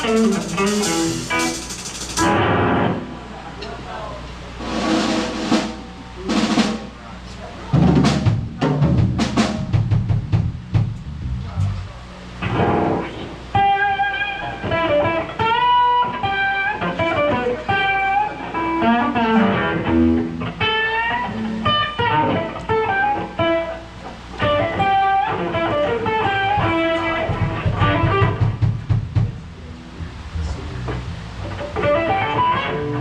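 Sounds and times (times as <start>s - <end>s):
electric guitar playing blues: 0.0s - 3.3s, 12.4s - 33.0s.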